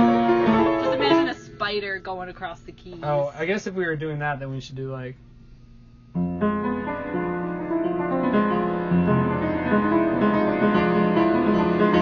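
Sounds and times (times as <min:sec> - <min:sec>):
keyboard sustained notes: 0:00.0 - 0:03.3.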